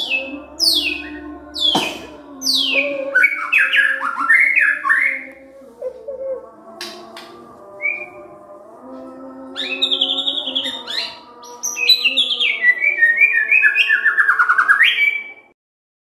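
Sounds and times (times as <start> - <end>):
songbird whistling and trilling: 9.6 - 15.5.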